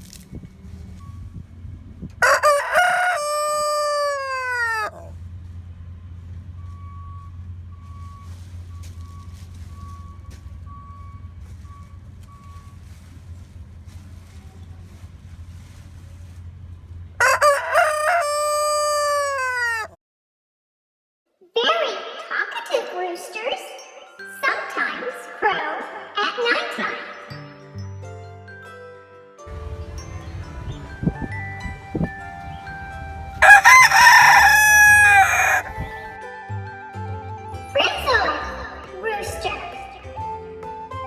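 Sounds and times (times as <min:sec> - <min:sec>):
rooster crowing: 0:02.2 - 0:05.1, 0:17.2 - 0:20.0, 0:33.4 - 0:36.2.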